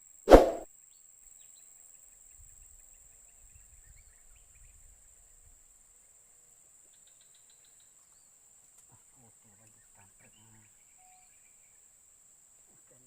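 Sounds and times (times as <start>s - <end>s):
faint chirps: 9.2s - 11.8s.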